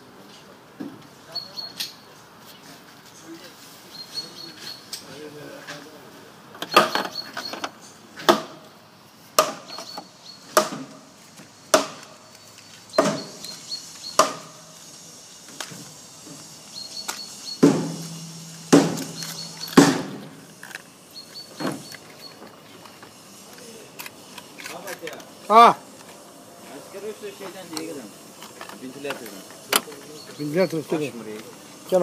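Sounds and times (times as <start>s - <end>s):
sharp knocks: 8.2s - 8.6s, 9.4s - 9.9s, 10.5s - 11.0s, 11.7s - 12.2s, 13.0s - 13.4s, 14.1s - 14.6s, 17.6s - 20.4s.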